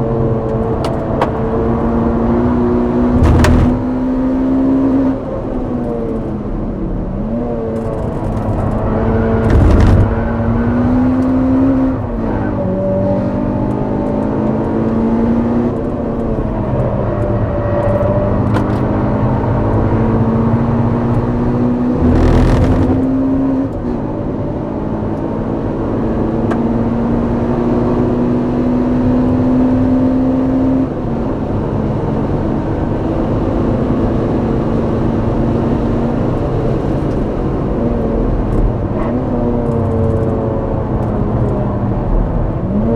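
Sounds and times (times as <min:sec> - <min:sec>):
car engine accelerating through gears: 0:00.2 - 0:05.2, 0:07.6 - 0:23.8
loud brief thumps: 0:03.1 - 0:03.9, 0:09.4 - 0:10.4, 0:22.0 - 0:23.2.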